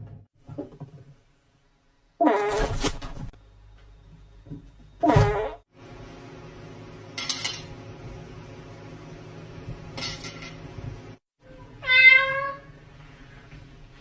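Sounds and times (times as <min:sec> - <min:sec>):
cat meowing: 0:11.8 - 0:12.7.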